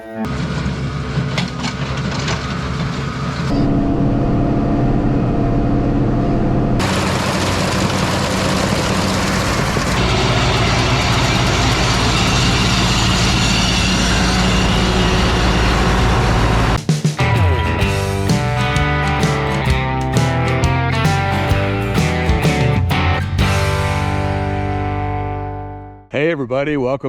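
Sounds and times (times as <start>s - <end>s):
large engine running: 0.3s - 18.4s
rushing noise: 3.5s - 16.8s.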